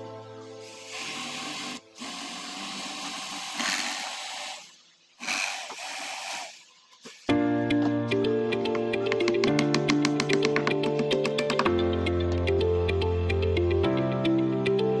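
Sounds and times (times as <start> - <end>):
background music: 0.0 - 4.2, 7.3 - 15.0
hissing noise: 0.6 - 7.4.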